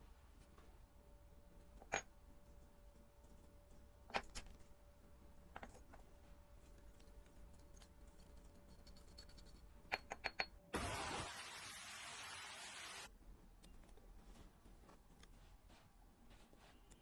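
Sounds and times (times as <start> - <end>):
metal tools clicking on watch parts: 6.9 - 10.6
rushing hiss: 10.8 - 13.1.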